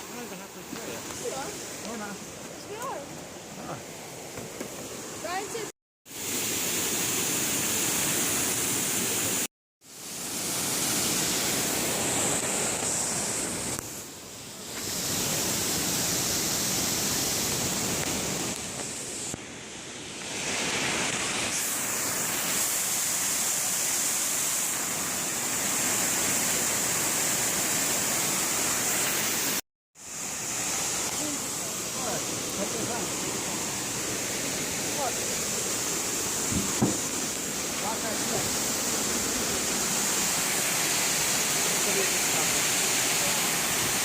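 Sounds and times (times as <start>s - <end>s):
waterfall roaring: 0.0s - 5.7s, 20.3s - 44.0s.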